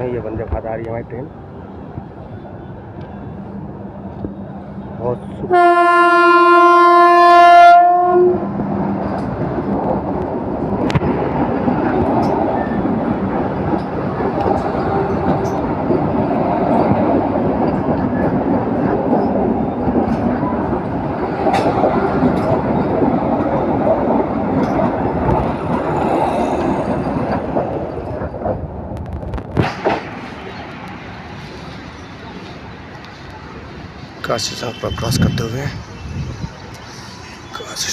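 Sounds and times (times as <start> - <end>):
train wheels rushing on rail: 0.0 - 37.9
clicking over rail joints: 20.0 - 31.7.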